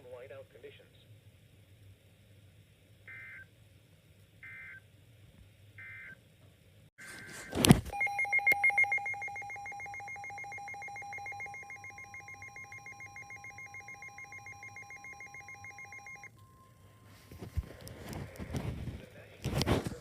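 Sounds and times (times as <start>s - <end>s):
data tones burst: 7.0s - 16.3s
faint steady tone: 7.0s - 17.9s
pulsing two-tone alert beep: 8.0s - 16.3s.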